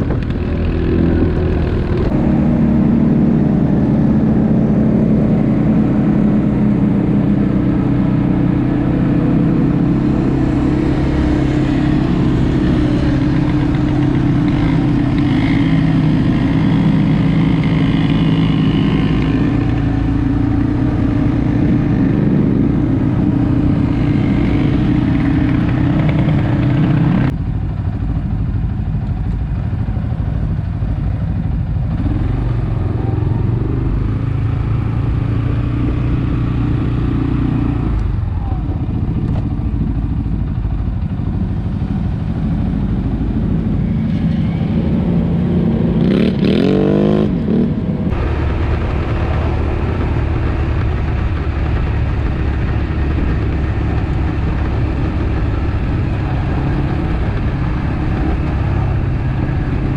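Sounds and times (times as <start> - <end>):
engine running: 0.0 - 59.9.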